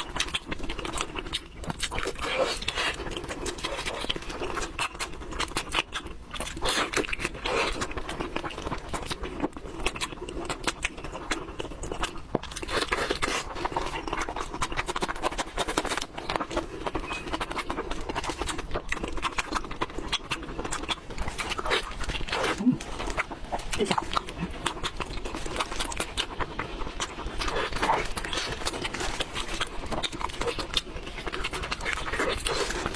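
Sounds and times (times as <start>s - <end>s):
crunching and chewing: 0.0s - 32.9s.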